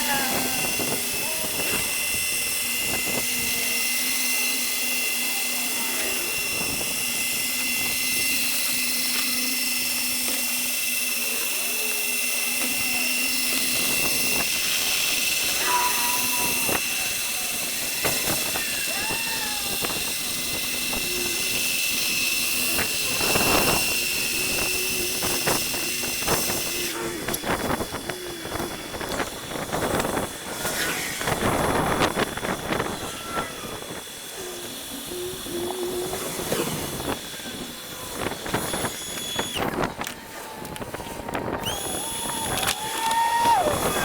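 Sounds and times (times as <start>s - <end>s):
low wavering tone: 0.0s - 29.5s, 32.9s - 37.8s
sanding machine whining: 0.0s - 44.0s.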